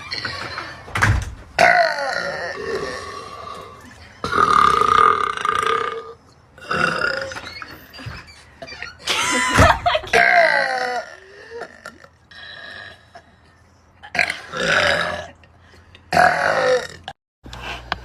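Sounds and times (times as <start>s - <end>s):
girl burping: 10.1s - 12.1s, 14.0s - 15.4s.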